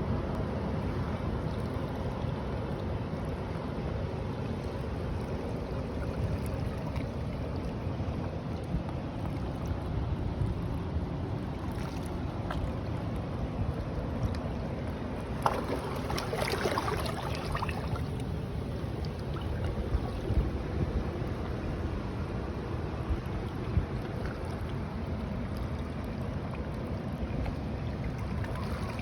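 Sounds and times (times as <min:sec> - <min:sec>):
wind buffeting microphone: 0:15.2 - 0:24.2.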